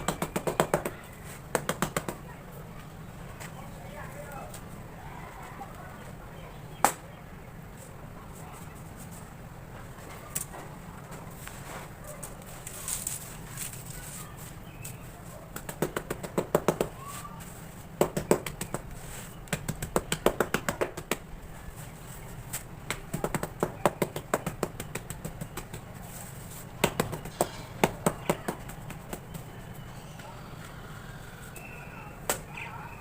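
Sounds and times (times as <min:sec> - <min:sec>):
quick taps on hard cement: 0:18.0 - 0:21.3, 0:22.5 - 0:25.9, 0:26.8 - 0:29.4.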